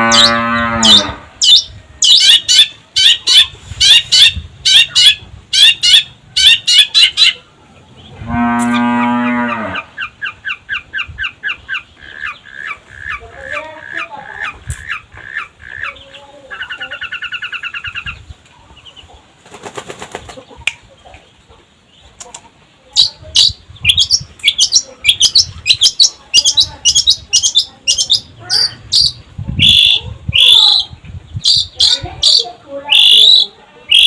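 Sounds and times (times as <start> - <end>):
bird trill: 0.0 - 7.4, 23.0 - 34.0
loud sharp high bird calls: 0.0 - 7.4, 23.0 - 34.0.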